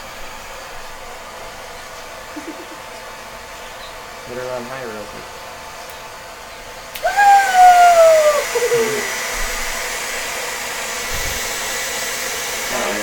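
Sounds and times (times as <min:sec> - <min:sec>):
hair dryer blowing: 0:00.0 - 0:04.3, 0:06.1 - 0:13.0
call sliding down in pitch: 0:07.0 - 0:09.2.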